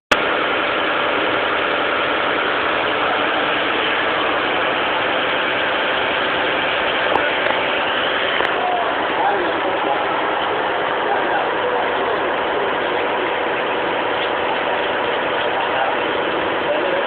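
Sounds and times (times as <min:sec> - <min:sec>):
motor droning: 0:00.1 - 0:17.0.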